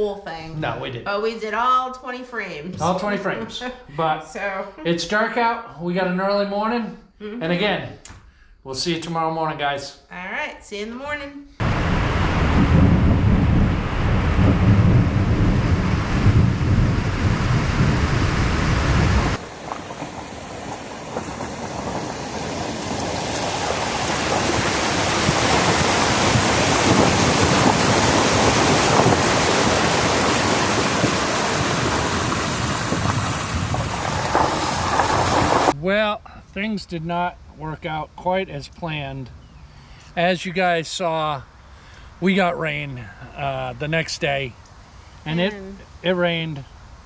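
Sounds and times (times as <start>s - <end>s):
deep rumble: 11.6s - 35.8s
heavy rain pouring: 11.6s - 35.8s.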